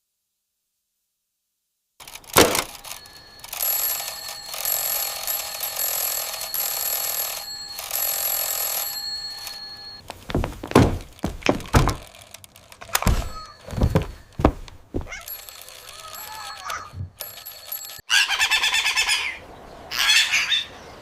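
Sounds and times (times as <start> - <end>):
alarm bell ringing: 2.0 - 10.0, 12.9 - 14.6, 15.2 - 18.1
thumps: 10.1 - 15.4.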